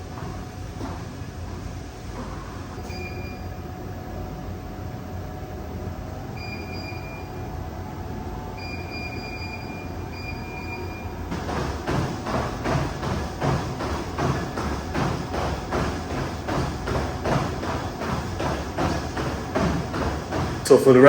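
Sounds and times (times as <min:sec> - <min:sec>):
treadmill rumbling: 0:00.0 - 0:21.0
treadmill belt squealing: 0:02.7 - 0:03.6, 0:06.3 - 0:21.0
loud knocking: 0:11.3 - 0:21.0.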